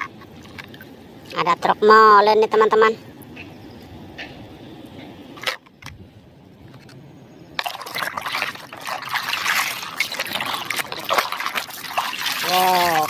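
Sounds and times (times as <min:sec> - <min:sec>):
water splashing on plastic toy: 0:07.6 - 0:13.0.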